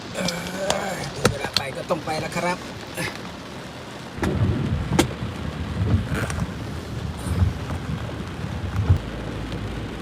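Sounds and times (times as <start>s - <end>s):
steady rain hiss: 0.0s - 10.0s
wind buffeting microphone: 4.2s - 10.0s.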